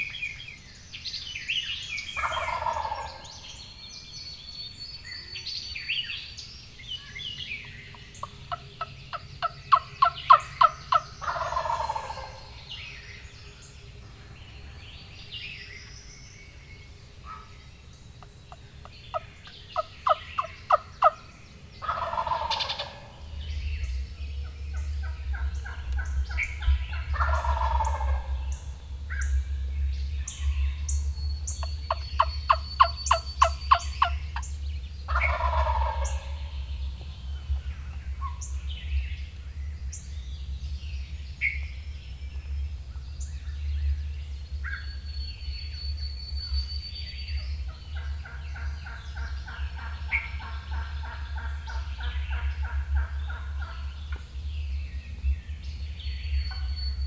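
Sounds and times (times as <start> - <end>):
small birds chirping faintly: 0.0 - 57.0
turkey gobble: 2.2 - 3.5, 8.2 - 12.6, 18.5 - 23.3, 24.7 - 28.8, 31.7 - 34.5, 35.1 - 36.8, 47.7 - 54.2
turkey yelps: 27.0 - 28.4, 35.1 - 36.5.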